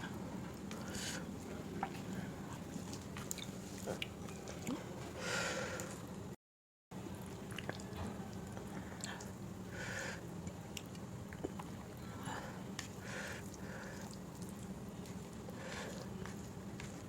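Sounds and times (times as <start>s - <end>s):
low steady hum: 0.0s - 17.0s
wet chewing: 1.7s - 4.9s, 7.4s - 9.4s, 12.8s - 17.0s.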